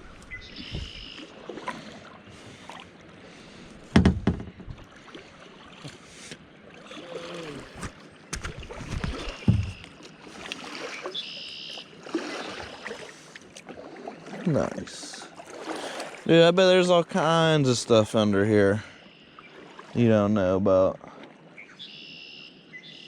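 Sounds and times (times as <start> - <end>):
paddle splashing in water: 0.0 - 16.5, 19.2 - 20.1, 21.0 - 22.4
sharp knocks: 3.9 - 4.9.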